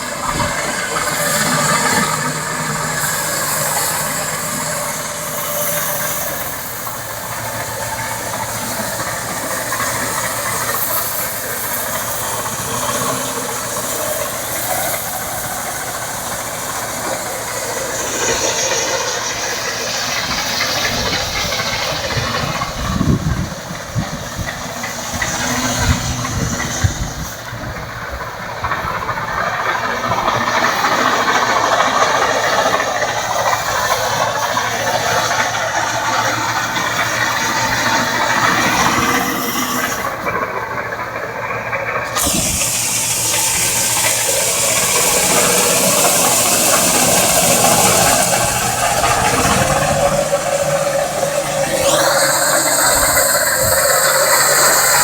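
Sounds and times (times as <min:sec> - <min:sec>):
combine harvester running: 0:00.0 - 0:55.0
low rumbling bursts: 0:42.0 - 0:55.0.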